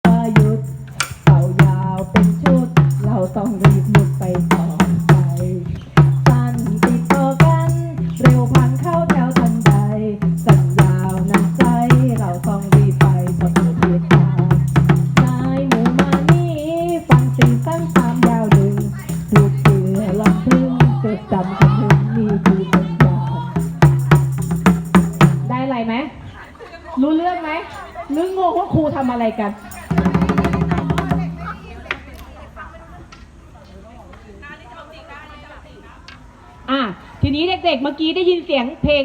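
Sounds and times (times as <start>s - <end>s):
jingling tambourine: 0.0s - 21.0s, 21.6s - 25.6s, 27.7s - 31.6s
person singing: 0.0s - 25.4s
steady drum beat: 0.0s - 25.7s, 28.2s - 31.8s.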